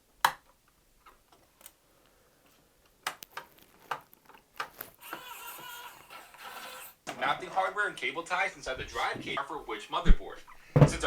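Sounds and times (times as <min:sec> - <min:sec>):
rustling: 0:01.0 - 0:07.7.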